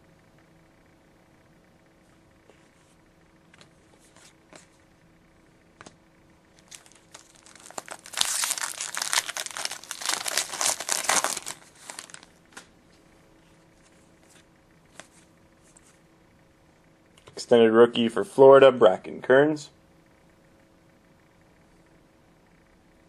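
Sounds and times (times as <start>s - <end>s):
foil wrapper tearing and crinkling: 6.6s - 12.3s.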